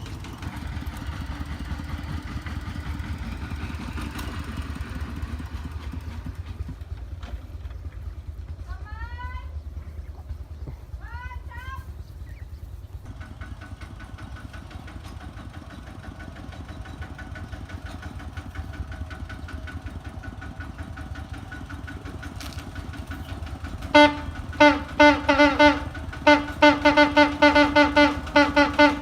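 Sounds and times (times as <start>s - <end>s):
tractor diesel engine running: 0.0s - 29.0s
horn honking: 23.7s - 29.0s.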